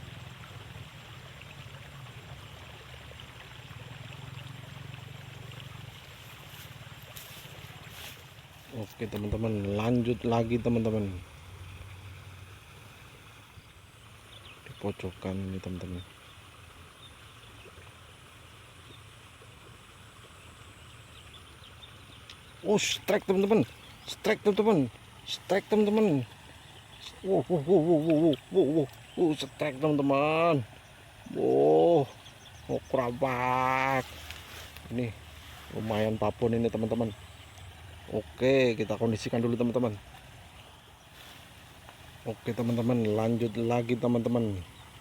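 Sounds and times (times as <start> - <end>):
water rushing in a ditch: 0.0 - 45.0
faint ticks: 20.8 - 27.2, 37.1 - 37.8.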